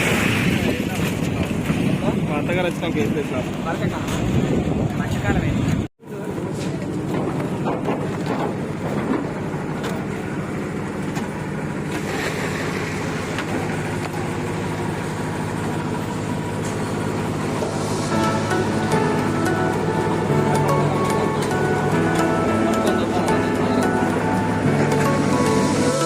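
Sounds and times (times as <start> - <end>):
machinery engine running: 5.4 - 26.0
music: 17.6 - 26.0.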